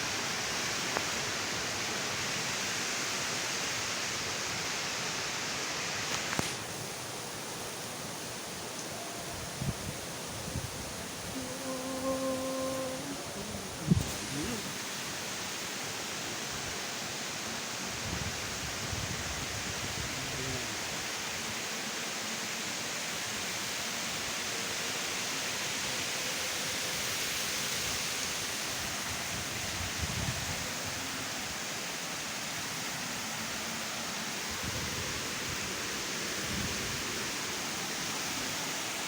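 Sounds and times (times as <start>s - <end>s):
water rushing: 11.0s - 18.6s.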